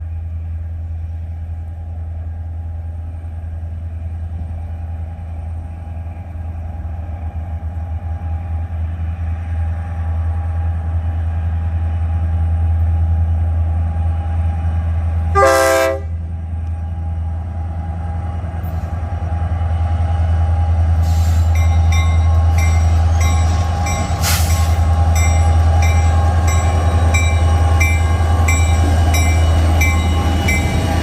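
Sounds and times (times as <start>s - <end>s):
locomotive engine rumble: 0.0s - 31.0s
train horn blast: 15.4s - 16.2s.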